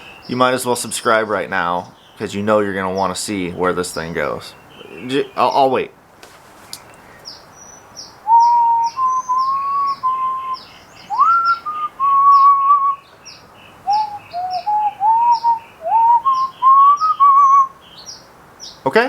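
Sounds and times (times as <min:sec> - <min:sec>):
small birds chirping: 0:00.0 - 0:19.0
person whistling a slow tune: 0:08.3 - 0:13.0, 0:13.9 - 0:17.7.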